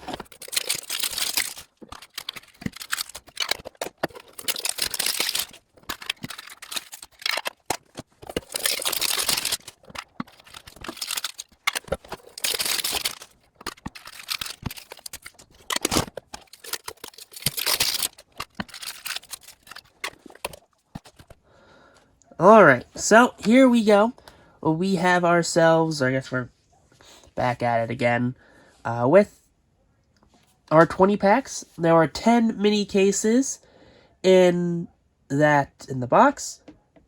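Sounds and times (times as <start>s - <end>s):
plastic packaging crinkling and tearing: 0.0s - 21.4s.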